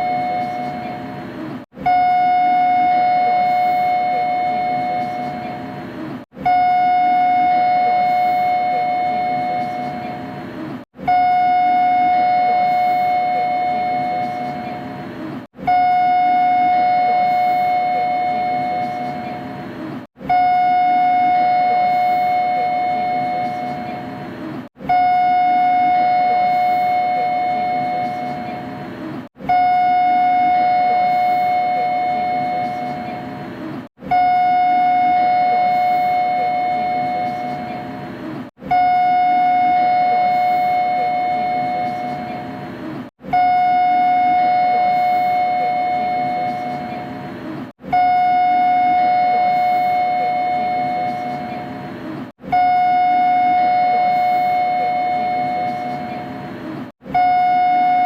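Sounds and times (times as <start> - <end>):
faint hum: 0.0 - 58.0.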